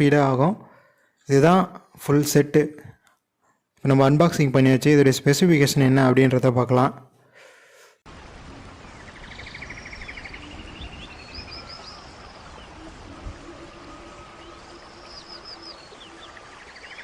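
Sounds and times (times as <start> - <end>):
songbird singing: 8.6 - 17.0.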